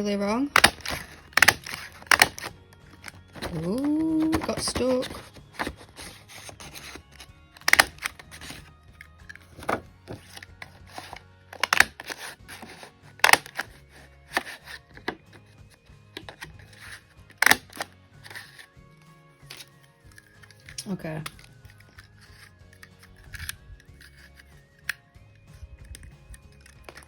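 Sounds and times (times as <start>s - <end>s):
faint background music: 0.0s - 27.0s
handling clicks: 0.5s - 3.6s, 6.6s - 12.2s
paper punch clacking: 0.5s - 8.6s, 9.4s - 15.2s, 16.2s - 18.6s.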